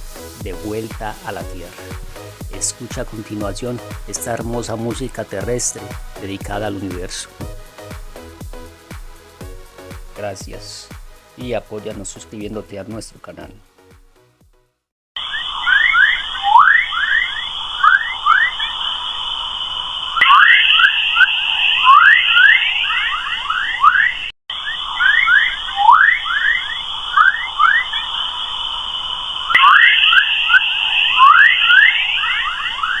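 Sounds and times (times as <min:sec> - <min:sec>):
rising electronic chirps: 0:15.2 - 0:19.4, 0:29.5 - 0:33.0
high whistling tone: 0:15.2 - 0:33.0.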